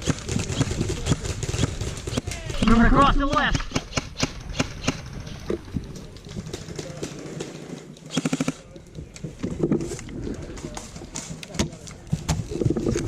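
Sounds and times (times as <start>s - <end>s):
airsoft gun rapid burst: 0.0s - 2.2s, 8.1s - 8.6s.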